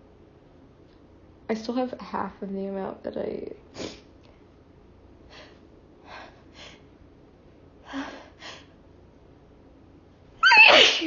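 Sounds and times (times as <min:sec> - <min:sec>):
woman sneezing: 0:03.8 - 0:04.1, 0:10.4 - 0:11.0.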